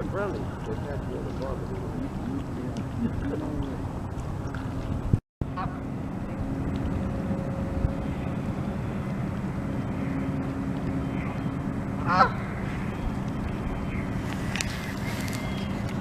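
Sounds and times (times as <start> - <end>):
steady low hum: 0.0 - 16.0
faint goose calls: 11.1 - 12.8
goose honking: 12.0 - 12.8.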